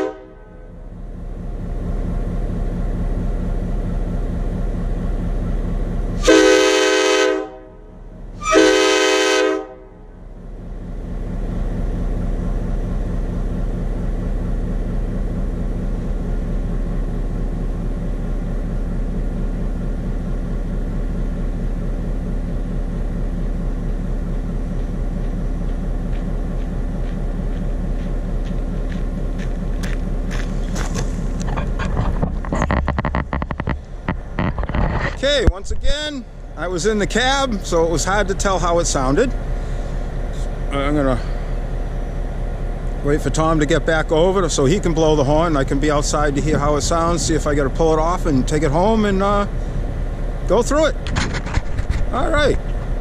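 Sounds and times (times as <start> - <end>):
locomotive air horn blasts: 0.0 - 0.8, 6.2 - 10.1
idling diesel engine drone: 0.0 - 53.0.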